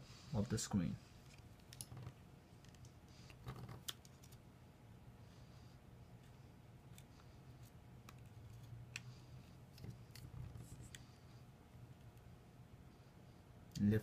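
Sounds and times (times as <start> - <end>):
low steady hum: 0.0 - 14.0
tool clicking and scraping on phone: 1.2 - 4.4, 6.2 - 11.1.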